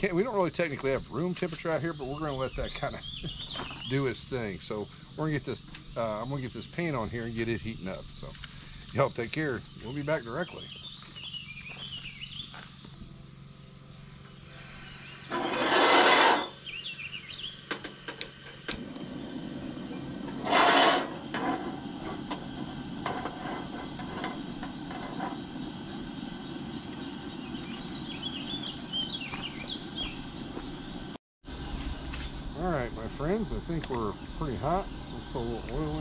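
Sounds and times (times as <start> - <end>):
camp stove burner hissing: 0.0 - 11.5, 14.2 - 36.0
burner steady low rush: 0.0 - 36.0
bird chirps: 1.5 - 15.6, 16.4 - 17.8, 23.8 - 31.1, 33.1 - 36.0.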